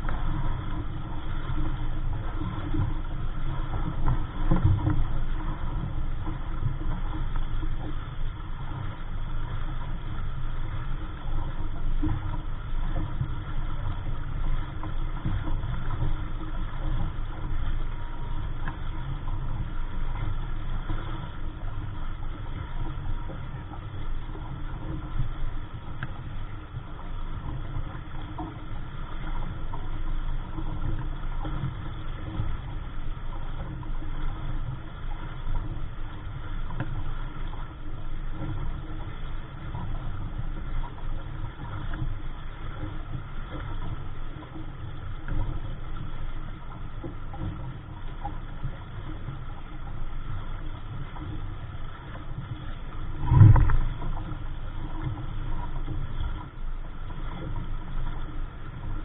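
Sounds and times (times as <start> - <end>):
wind buffeting microphone: 52.6 - 55.9.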